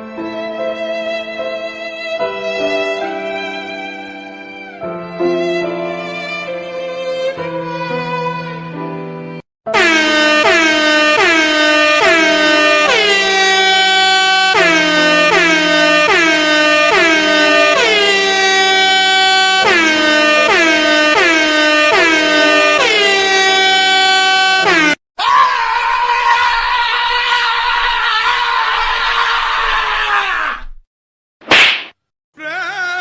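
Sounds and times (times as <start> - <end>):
air horn playing a tune: 9.7 - 25.0.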